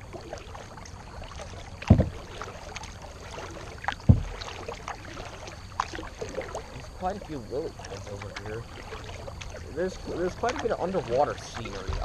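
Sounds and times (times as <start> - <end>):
paddle splashing and dripping: 0.0 - 12.0
dull thumps: 1.8 - 2.3, 4.0 - 4.5.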